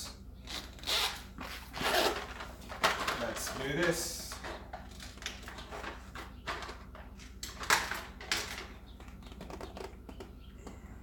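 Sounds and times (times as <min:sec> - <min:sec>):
plastic covers clicking: 0:02.1 - 0:10.3.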